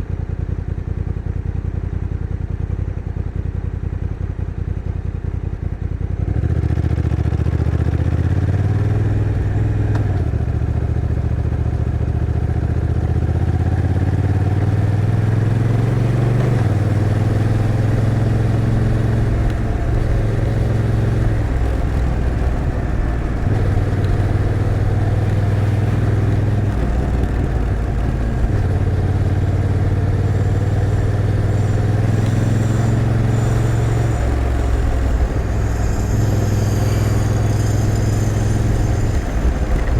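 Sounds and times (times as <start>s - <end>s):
motorcycle engine changing gear: 8.1s - 39.9s.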